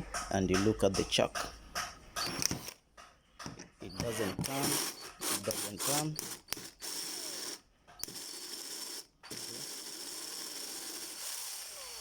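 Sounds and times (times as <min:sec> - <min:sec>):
cordless drill motor whirring: 0:04.0 - 0:12.0.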